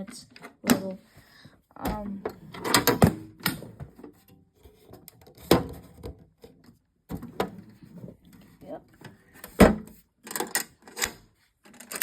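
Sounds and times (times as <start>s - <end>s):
tools clattering in a toolbox: 10.2s - 12.0s.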